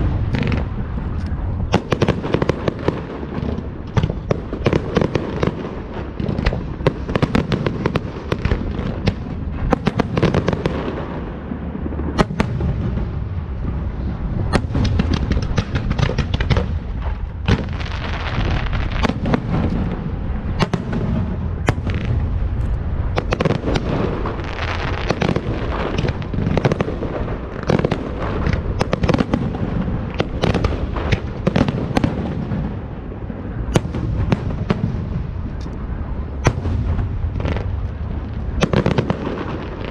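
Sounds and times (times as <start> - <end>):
fireworks bangs and crackling: 0.0 - 39.9
low rumble: 8.5 - 10.2, 11.0 - 28.9, 32.3 - 39.9.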